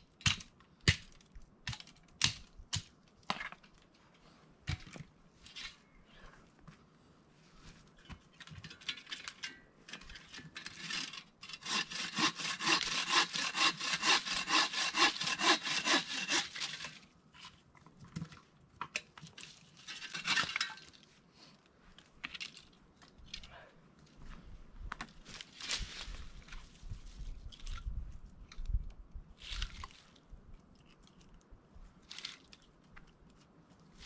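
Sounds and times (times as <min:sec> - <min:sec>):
hand saw cutting wood: 0:10.6 - 0:17.0.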